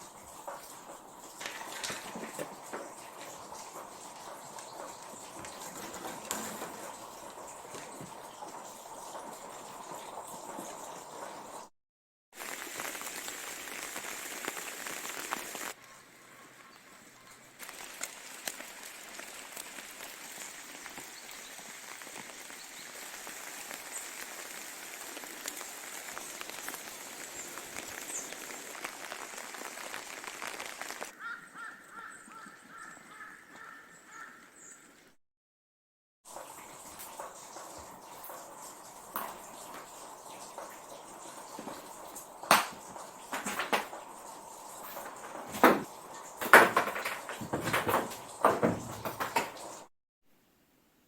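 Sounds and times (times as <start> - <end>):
raindrops ticking: 0.0 - 11.6, 12.4 - 16.0, 17.6 - 31.1, 36.3 - 49.9
rain hissing: 0.0 - 11.7, 12.4 - 15.8, 17.5 - 31.2, 36.3 - 49.9
wind: 12.4 - 29.7, 30.4 - 35.1.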